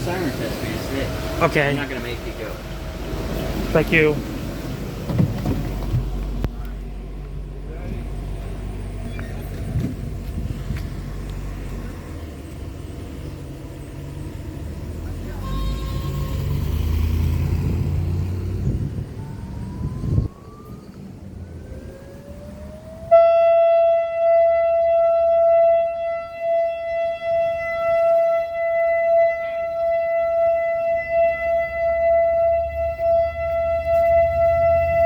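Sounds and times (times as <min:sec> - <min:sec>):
low rumble stopping with a thump: 0:05.0 - 0:11.8
warning siren wailing: 0:11.0 - 0:35.0.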